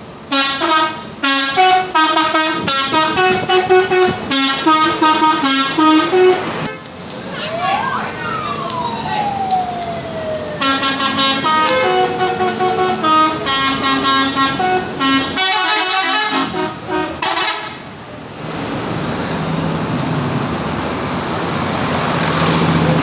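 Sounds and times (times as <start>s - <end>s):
bus engine humming: 0.0s - 23.0s
road noise: 0.0s - 23.0s
harsh horn blast: 0.3s - 6.9s, 10.6s - 17.8s
musical bus horn: 0.3s - 6.9s, 10.6s - 17.9s.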